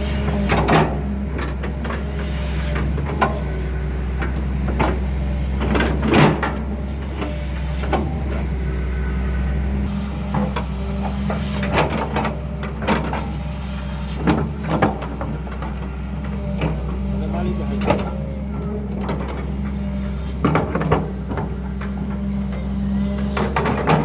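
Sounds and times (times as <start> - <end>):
excavator engine running: 0.0 - 24.0
machine clunks and knocks: 20.4 - 24.0.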